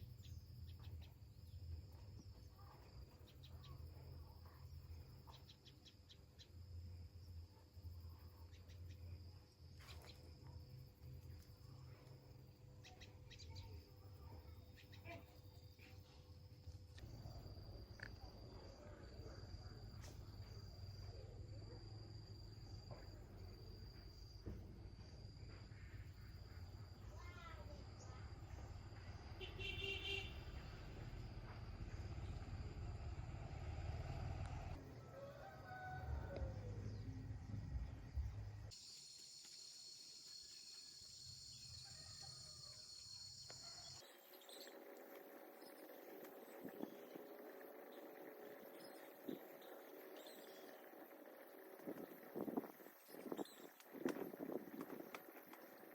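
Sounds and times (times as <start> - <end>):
low background rumble: 36.1 - 38.7
high-pitched insect trilling: 38.7 - 55.9.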